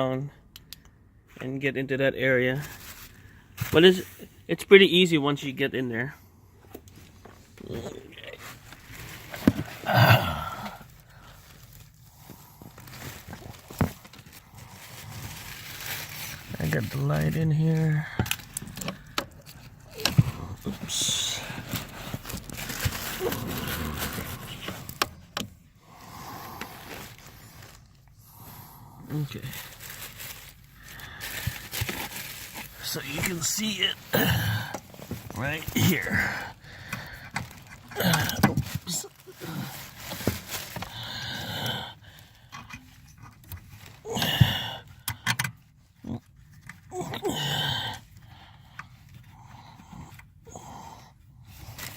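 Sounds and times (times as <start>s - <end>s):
man breathing hard: 8.9s - 15.5s, 25.8s - 32.8s, 36.0s - 38.3s, 40.6s - 42.8s, 44.0s - 45.3s, 47.3s - 51.9s
rustling and small knocks: 11.5s - 17.2s.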